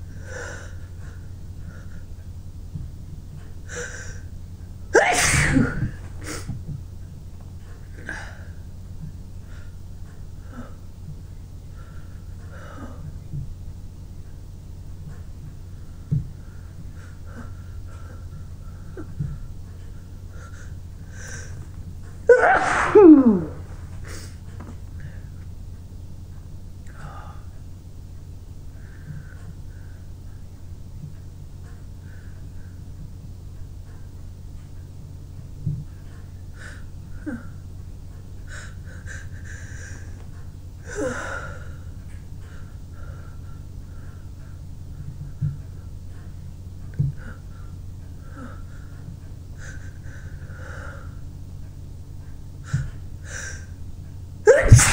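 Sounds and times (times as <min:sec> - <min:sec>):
wheezy breathing: 0:00.0 - 0:02.3, 0:03.6 - 0:04.4, 0:15.1 - 0:21.8, 0:23.1 - 0:25.4, 0:38.4 - 0:44.7, 0:47.1 - 0:51.3, 0:52.6 - 0:53.8
person sneezing loudly: 0:05.0 - 0:05.9, 0:22.3 - 0:23.6, 0:54.5 - 0:54.9
faint breaths: 0:09.4 - 0:13.3, 0:28.6 - 0:30.4.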